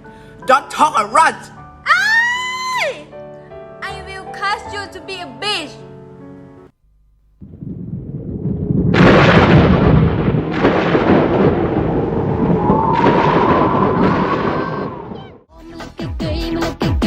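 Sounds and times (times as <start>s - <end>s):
thunder rumble and crashes: 7.4s - 15.5s.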